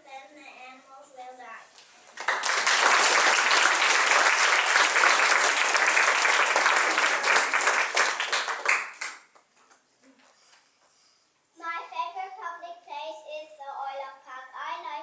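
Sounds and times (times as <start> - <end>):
audience applauding: 2.2 - 9.4.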